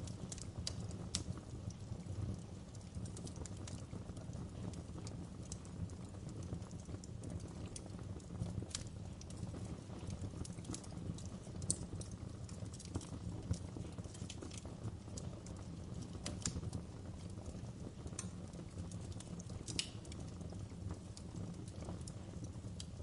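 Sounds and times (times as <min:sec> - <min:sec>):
wood fire crackling: 0:00.0 - 0:23.0.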